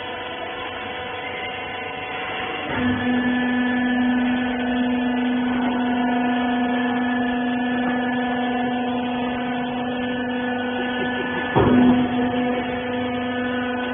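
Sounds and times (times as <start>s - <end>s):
baler machine humming: 0.0s - 13.9s.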